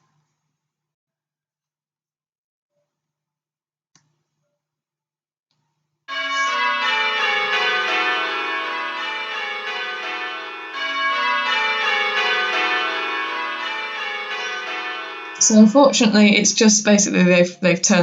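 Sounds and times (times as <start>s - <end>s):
simulated church bells ringing: 6.1s - 17.0s.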